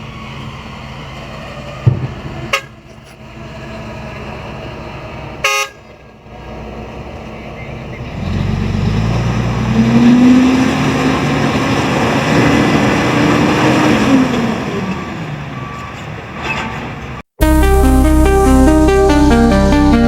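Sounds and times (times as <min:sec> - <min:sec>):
dump truck diesel engine: 0:06.0 - 0:17.2.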